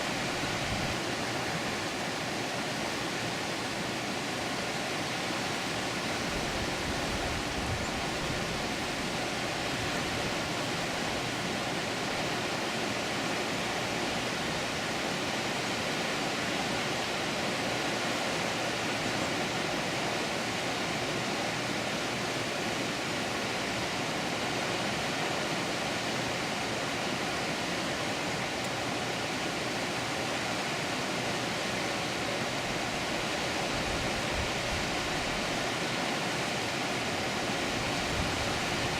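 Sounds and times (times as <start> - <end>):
water rushing at a dam: 0.0 - 38.9.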